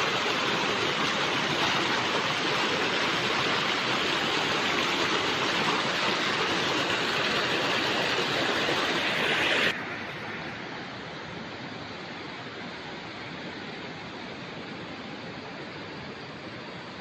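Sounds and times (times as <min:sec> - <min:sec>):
heavy rain pouring: 0:00.0 - 0:10.3.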